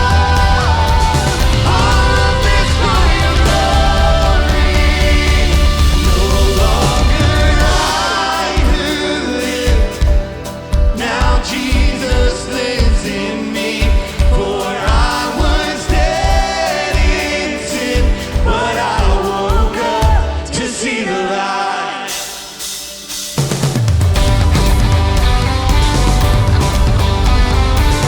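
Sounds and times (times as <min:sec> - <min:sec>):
kick drum beat: 0:00.0 - 0:09.0, 0:09.7 - 0:13.2, 0:13.8 - 0:17.4, 0:18.0 - 0:20.2, 0:24.0 - 0:28.0
group singing: 0:00.0 - 0:22.9
worship band playing: 0:00.0 - 0:28.0.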